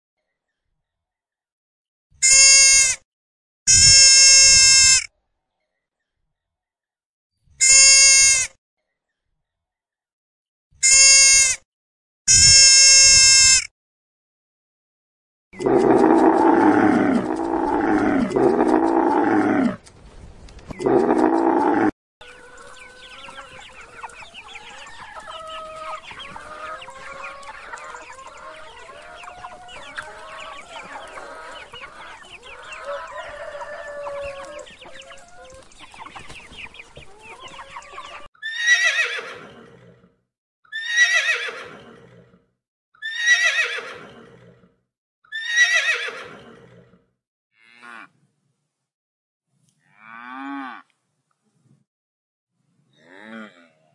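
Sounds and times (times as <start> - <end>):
short bleat: 2.2 - 3.0, 3.7 - 5.1, 7.6 - 8.5, 10.8 - 11.6, 12.3 - 13.7
chickens clucking: 15.6 - 19.3, 20.7 - 38.3
chicken calls: 15.6 - 19.8, 20.7 - 39.6
horse whinnying: 15.6 - 19.8, 20.8 - 21.9, 38.4 - 40.1, 40.7 - 42.3, 43.0 - 44.7, 45.3 - 47.0.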